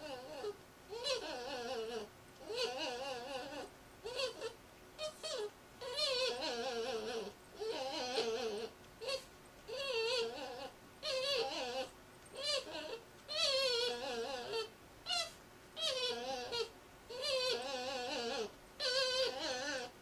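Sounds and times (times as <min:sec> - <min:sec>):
dog whining: 0:00.0 - 0:20.0.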